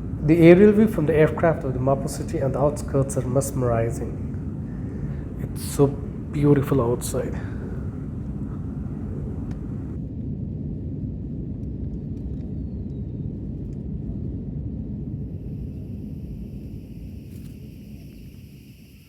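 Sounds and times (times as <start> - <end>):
airliner cabin rumble: 0.0 - 10.0.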